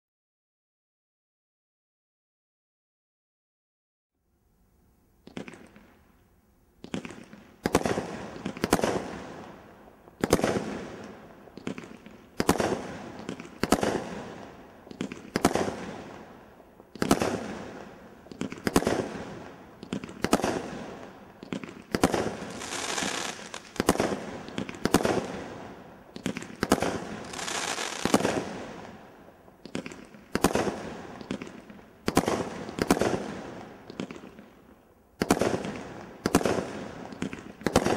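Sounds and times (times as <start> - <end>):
crackling firework tails: 6.8 - 34.6.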